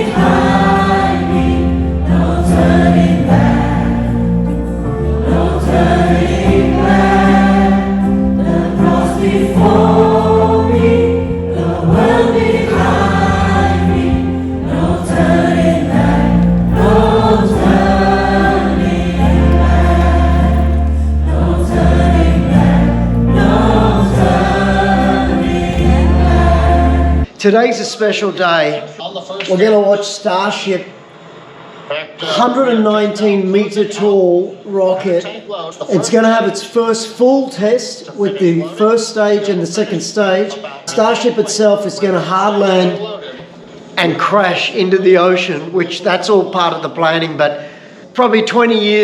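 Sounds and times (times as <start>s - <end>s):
band with sustained bass: 0.0s - 27.3s
choir singing gospel song: 0.0s - 27.4s.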